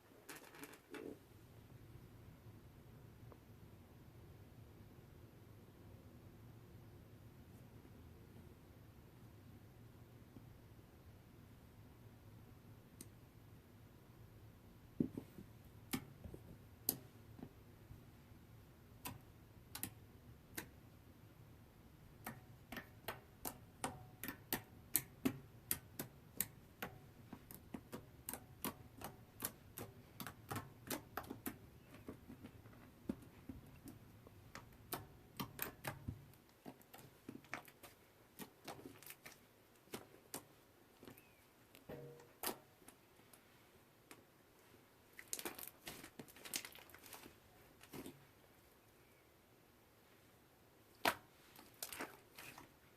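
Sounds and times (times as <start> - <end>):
slime crackling and popping: 45.2 - 47.3.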